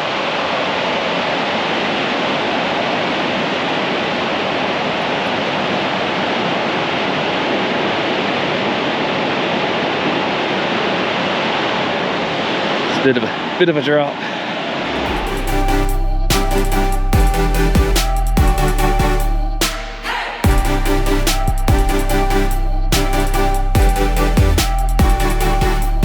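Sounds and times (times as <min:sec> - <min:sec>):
waterfall roar: 0:00.0 - 0:15.3.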